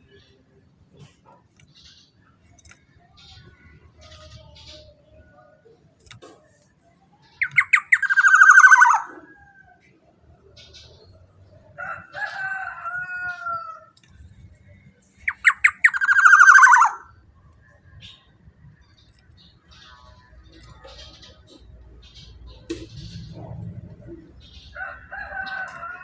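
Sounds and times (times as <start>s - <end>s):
bird calling harsh and buzzy: 7.4s - 9.3s, 15.2s - 17.2s.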